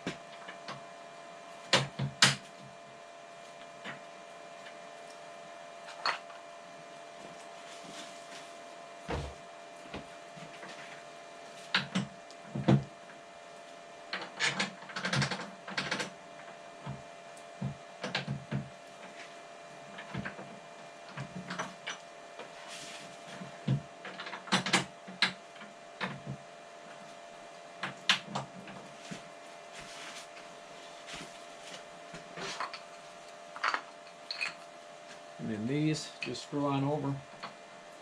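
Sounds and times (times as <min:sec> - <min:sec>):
faint steady hum: 0:00.0 - 0:38.0
metal parts clicking and rattling: 0:33.6 - 0:34.6.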